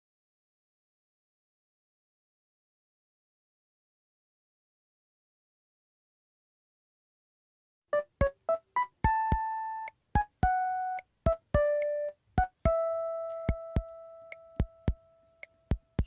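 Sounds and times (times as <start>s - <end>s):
electric piano melody: 8.0s - 15.5s.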